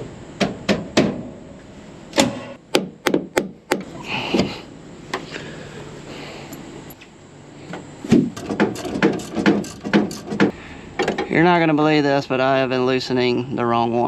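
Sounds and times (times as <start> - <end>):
tools knocking on metal: 8.3 - 11.3.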